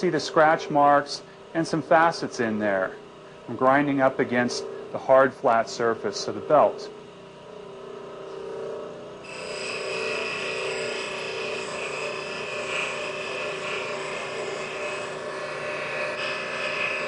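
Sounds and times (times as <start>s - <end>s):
deburring wheel whirring: 9.2s - 17.0s.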